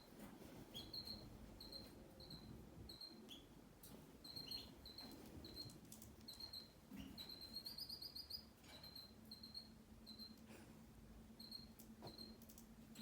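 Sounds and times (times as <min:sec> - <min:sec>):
faint high-pitched chirping: 0:00.7 - 0:03.5, 0:04.2 - 0:10.4.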